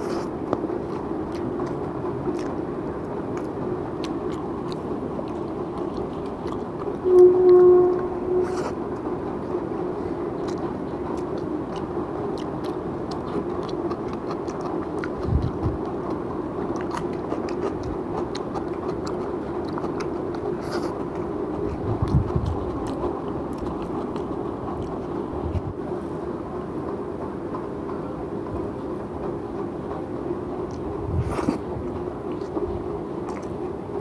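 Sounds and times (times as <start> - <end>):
person chewing with wet mouth clicks: 0.0 - 7.0, 10.4 - 25.7, 32.3 - 33.8
low background hum: 0.0 - 34.0.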